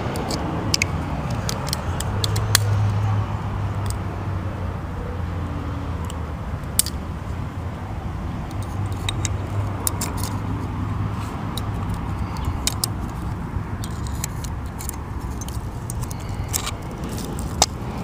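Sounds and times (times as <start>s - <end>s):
small metal parts clicking: 0.1s - 2.8s, 6.0s - 7.0s, 8.5s - 18.0s.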